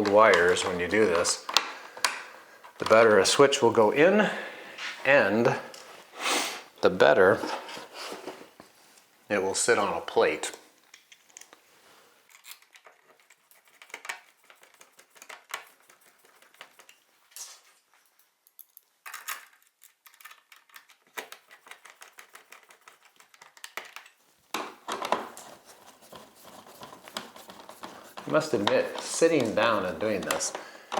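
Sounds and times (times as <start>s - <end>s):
handling noise: 18.6s - 30.9s
metallic clicks and scrapes: 25.3s - 30.6s.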